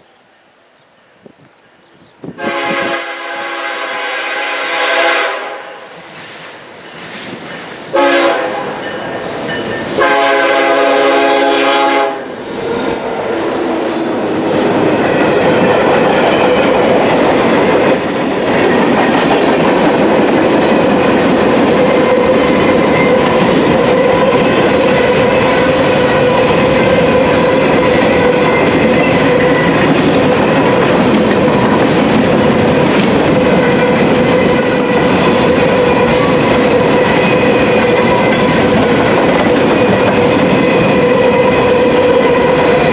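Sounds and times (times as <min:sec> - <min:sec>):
locomotive horn: 0:02.4 - 0:06.0, 0:07.9 - 0:08.9, 0:09.8 - 0:13.0
train wheels clattering over rails: 0:06.0 - 0:42.9.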